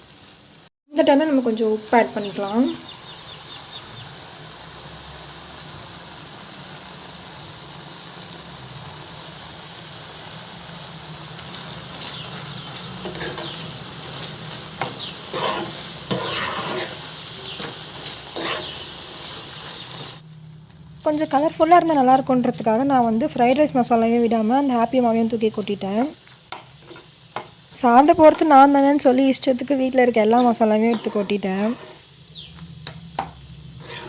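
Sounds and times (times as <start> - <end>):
sauce simmering with a hiss: 0.0 - 22.5, 31.0 - 34.0
spoon stirring and scraping: 12.0 - 18.9, 30.4 - 32.1, 32.8 - 34.0.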